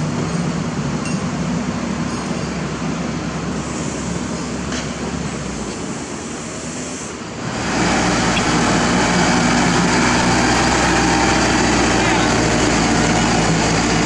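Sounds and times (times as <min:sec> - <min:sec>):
heavy machinery engine running: 0:07.4 - 0:14.0.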